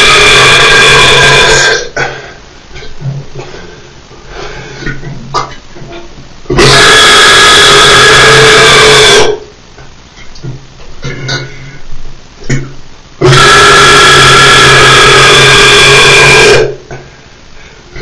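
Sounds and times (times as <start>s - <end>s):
loud long belches: 0.0s - 2.1s, 6.5s - 9.4s, 12.4s - 17.0s.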